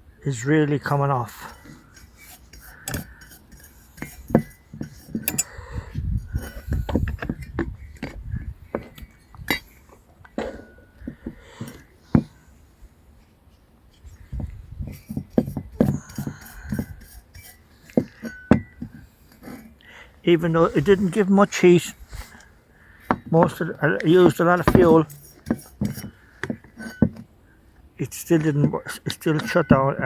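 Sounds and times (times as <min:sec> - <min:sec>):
metal tool scraping and tapping: 0:01.3 - 0:05.6, 0:06.2 - 0:12.4, 0:14.4 - 0:19.8, 0:23.1 - 0:27.3, 0:28.4 - 0:30.0
sharp metal clinks and knocks: 0:02.2 - 0:05.5, 0:24.3 - 0:26.1.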